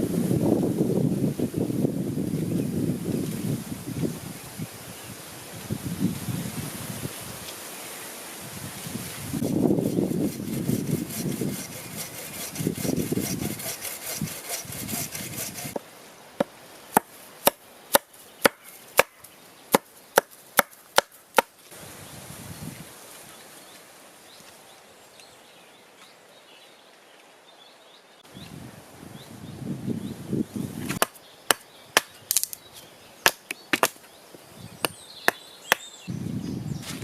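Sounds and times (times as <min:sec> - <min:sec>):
scraping or sawing wood: 0:09.4 - 0:15.8
sharp strikes on wood: 0:16.4 - 0:21.5, 0:30.9 - 0:32.5.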